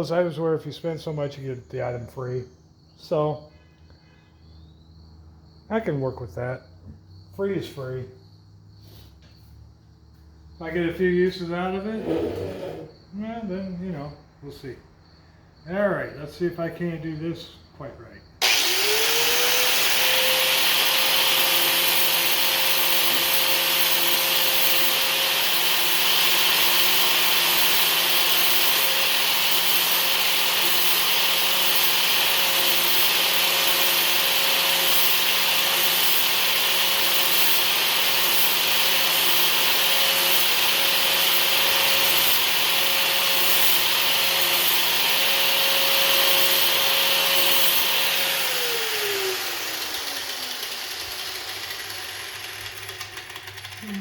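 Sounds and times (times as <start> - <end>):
grinder sanding steel: 11.8 - 12.9, 18.4 - 54.0
grinder motor whine: 18.4 - 54.0.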